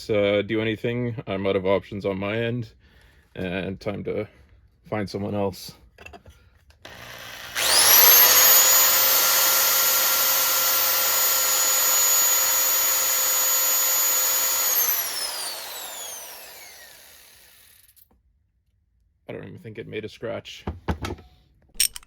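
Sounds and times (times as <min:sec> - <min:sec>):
electric drill whining: 0:06.9 - 0:18.0
drill bit scratching bolt: 0:07.6 - 0:17.8, 0:21.8 - 0:22.0.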